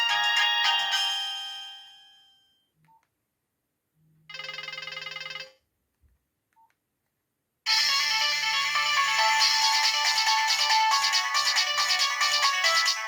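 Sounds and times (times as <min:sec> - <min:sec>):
mobile phone ringtone: 0:00.0 - 0:02.6, 0:04.3 - 0:05.6, 0:07.7 - 0:13.0.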